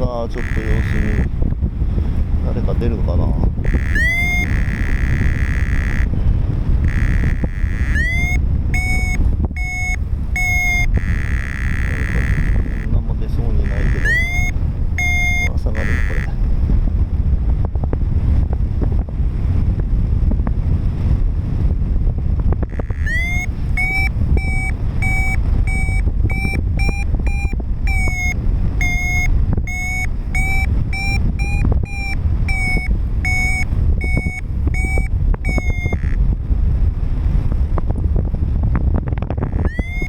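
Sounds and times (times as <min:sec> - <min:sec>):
variometer short beeps: 0:00.0 - 0:01.5, 0:03.6 - 0:06.2, 0:06.8 - 0:16.5, 0:22.7 - 0:36.3, 0:39.4 - 0:40.0
wind noise on microphone: 0:00.0 - 0:40.0.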